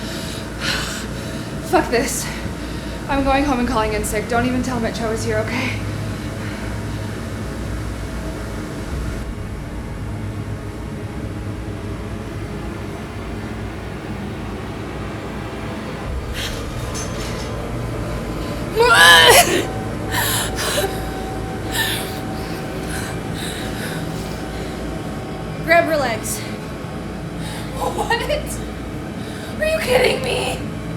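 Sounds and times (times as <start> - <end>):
low hum: 0.0 - 30.9
woman screaming: 18.8 - 21.1.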